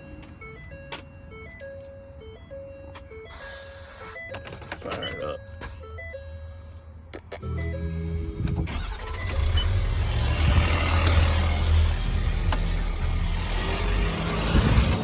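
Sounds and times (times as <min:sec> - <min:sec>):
engine running low drone: 0:05.8 - 0:15.0.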